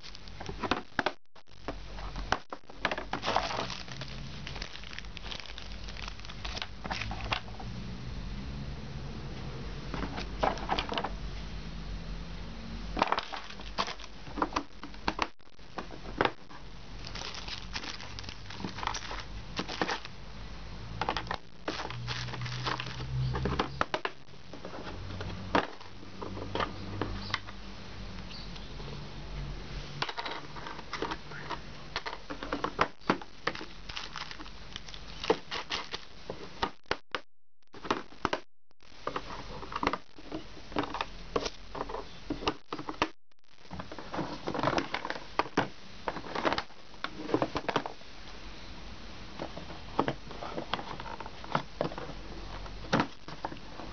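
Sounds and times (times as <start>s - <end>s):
small objects clicking and crinkling: 0.0s - 7.5s, 13.0s - 20.1s, 21.0s - 24.9s, 30.0s - 37.1s.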